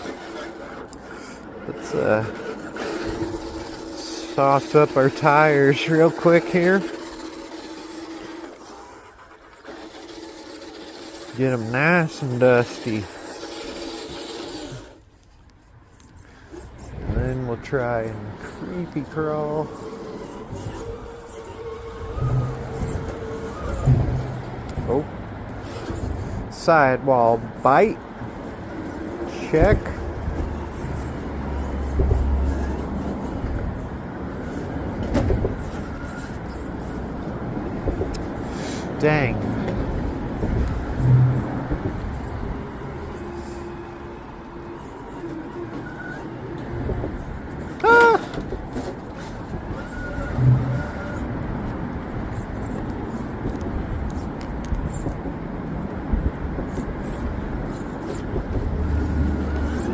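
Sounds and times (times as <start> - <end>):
electric motor and gears whirring: 0.0 - 59.9
tires scrabbling on stone: 0.0 - 59.9.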